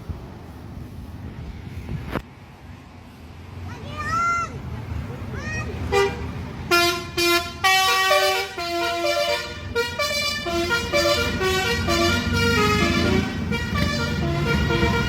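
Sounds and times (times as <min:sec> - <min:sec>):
multi-tone air horn tune: 0:05.9 - 0:15.0.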